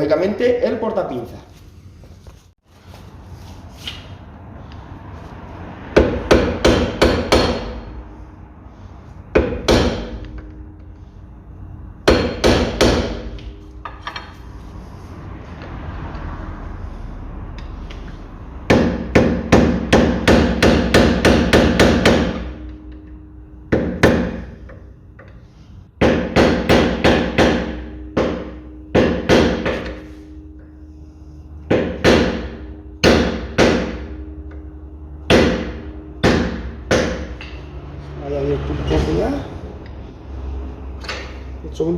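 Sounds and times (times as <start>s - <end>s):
hammer striking metal: 5.8s - 8.2s, 9.2s - 14.6s, 17.5s - 41.6s.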